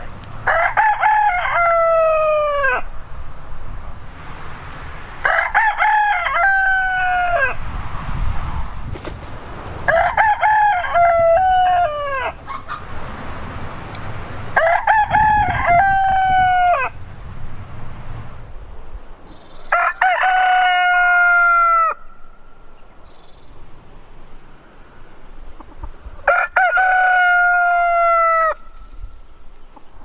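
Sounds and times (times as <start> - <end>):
rooster crowing: 0.4 - 2.9, 5.2 - 7.6, 9.8 - 12.9, 14.4 - 17.0, 19.7 - 22.3, 26.2 - 28.8.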